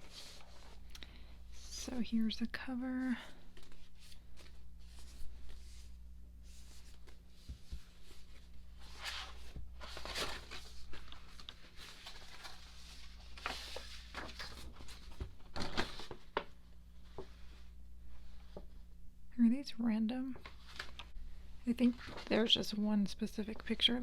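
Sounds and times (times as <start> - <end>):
low steady hum: 0.0 - 24.0
paper and plastic rustling: 2.9 - 17.6, 20.4 - 21.2, 21.8 - 22.7.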